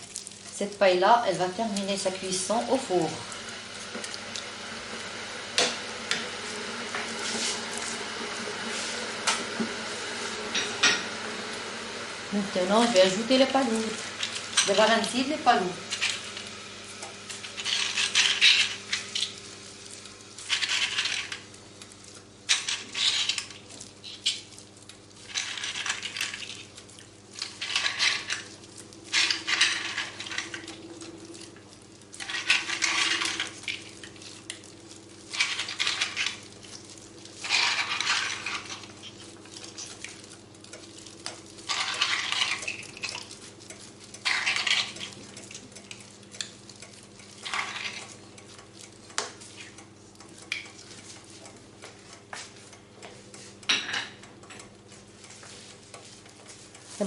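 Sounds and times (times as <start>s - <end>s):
clam shells clattering in a pan: 41.6s - 43.3s.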